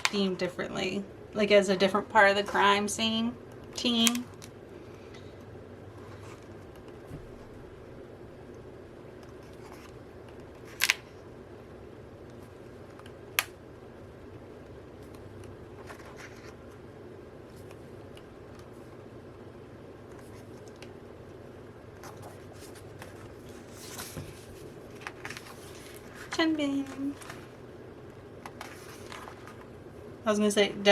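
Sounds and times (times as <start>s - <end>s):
steady low hum: 0.0s - 30.9s
paper booklets rustling: 22.0s - 27.6s, 28.5s - 29.7s.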